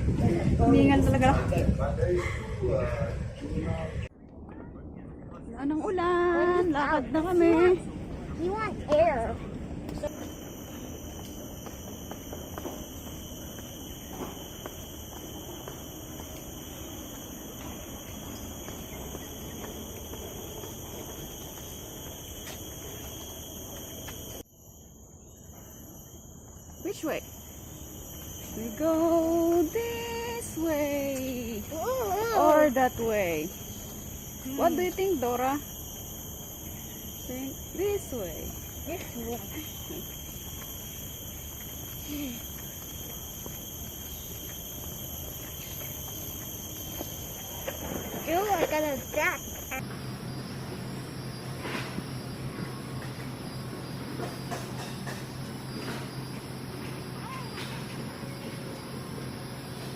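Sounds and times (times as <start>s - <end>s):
insect chorus: 6.5s - 59.9s.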